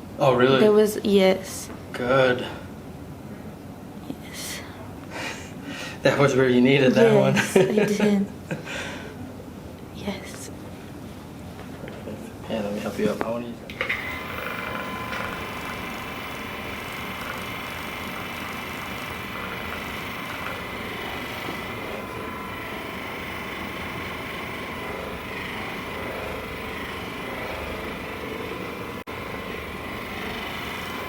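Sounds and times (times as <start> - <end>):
small electric motor whirring: 13.7 - 31.0.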